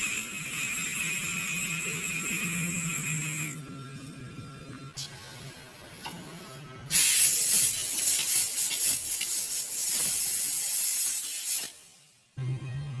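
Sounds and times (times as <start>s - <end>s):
aerosol spray hissing: 6.9s - 11.9s.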